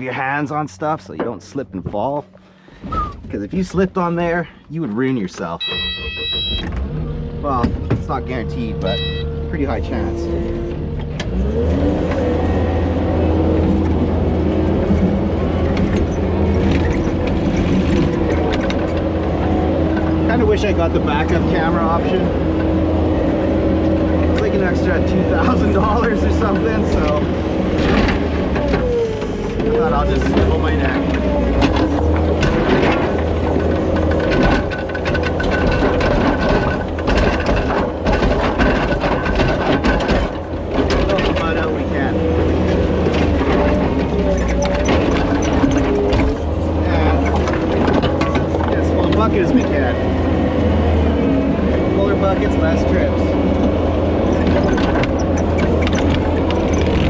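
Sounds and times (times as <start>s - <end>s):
diesel engine revving: 0.0s - 57.0s
hydraulic whine: 5.6s - 57.0s
rocks knocking and scraping: 24.3s - 49.8s.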